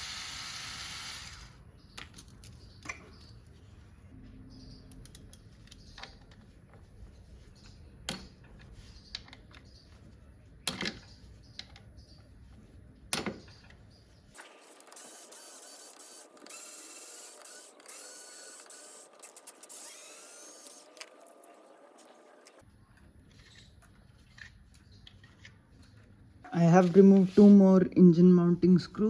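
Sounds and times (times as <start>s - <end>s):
ratchet ratcheting and whirring: 14.4s - 22.6s.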